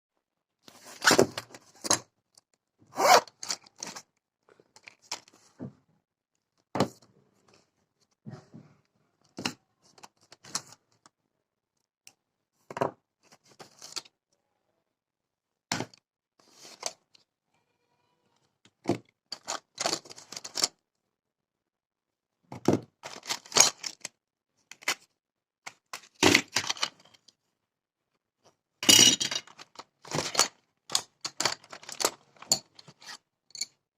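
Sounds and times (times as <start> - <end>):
small items rustling and clicking: 3.3 - 5.6, 18.7 - 20.8, 23.0 - 27.4, 28.4 - 33.2.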